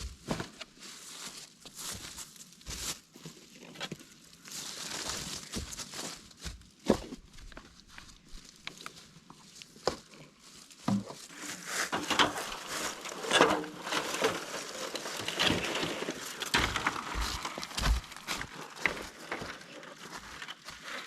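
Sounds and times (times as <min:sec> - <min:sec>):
dry material rustling and crinkling: 0:00.0 - 0:21.0.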